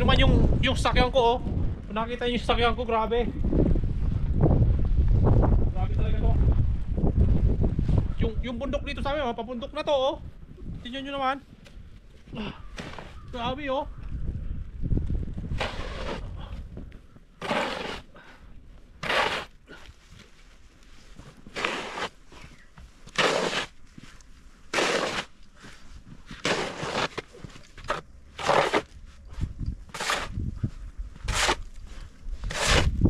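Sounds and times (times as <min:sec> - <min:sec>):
snow crunching: 0:15.5 - 0:16.6, 0:17.4 - 0:33.0.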